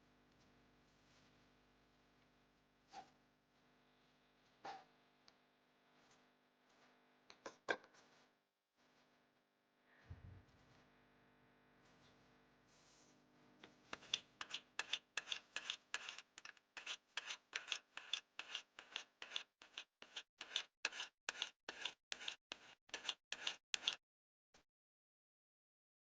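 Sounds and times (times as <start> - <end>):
rhythmic hand tool scraping: 13.9 - 24.0.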